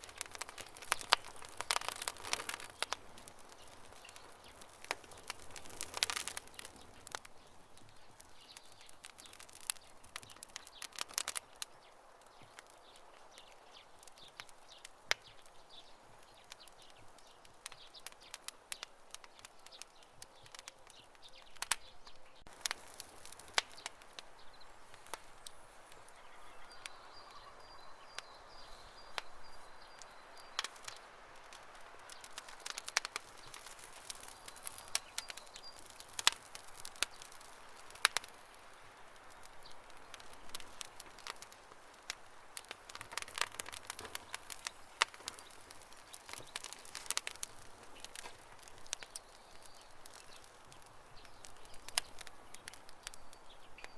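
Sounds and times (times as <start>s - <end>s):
campfire crackling: 0.0s - 53.9s.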